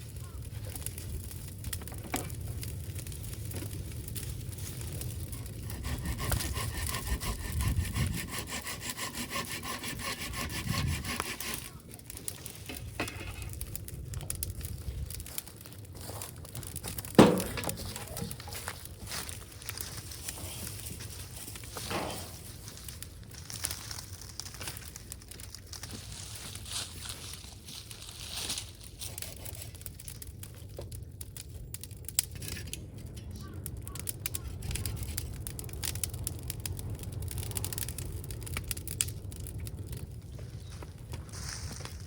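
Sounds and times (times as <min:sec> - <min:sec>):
hand saw cutting wood: 0:05.4 - 0:11.8
loud knock: 0:17.2 - 0:17.8.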